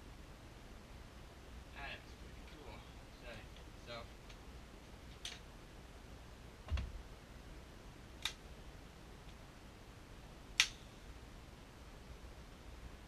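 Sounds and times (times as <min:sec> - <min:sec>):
sharp single clicks: 0:08.2 - 0:08.4, 0:10.6 - 0:10.8.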